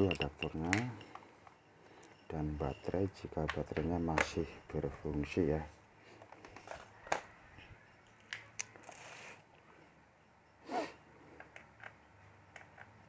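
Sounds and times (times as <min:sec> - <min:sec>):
plastic clicks: 0:03.4 - 0:04.8, 0:11.4 - 0:13.0
rustle or breath: 0:08.8 - 0:10.0.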